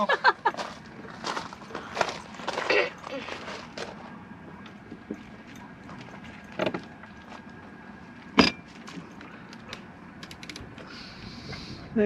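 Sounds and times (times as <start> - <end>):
sharp metallic clank: 8.4 - 8.7.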